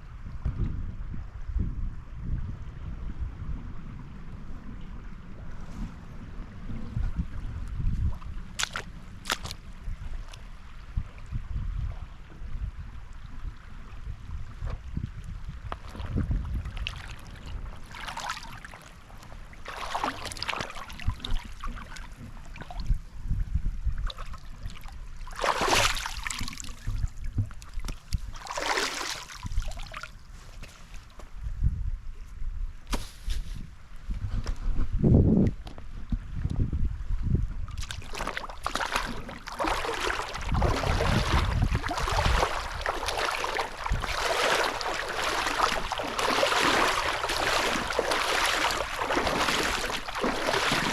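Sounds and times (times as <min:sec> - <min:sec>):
wind rumble on microphone: 0:00.0 - 0:50.9
water splashing in a river: 0:08.3 - 0:11.3, 0:15.6 - 0:23.0, 0:24.0 - 0:30.2, 0:37.7 - 0:50.9
loud splashes: 0:19.6 - 0:21.2, 0:25.3 - 0:26.7, 0:28.4 - 0:30.0, 0:37.8 - 0:50.9.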